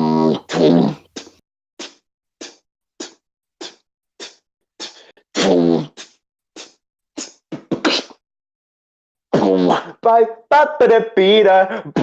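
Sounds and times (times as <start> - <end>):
beatboxing mouth percussion: 0.1 - 8.2, 9.3 - 10.0.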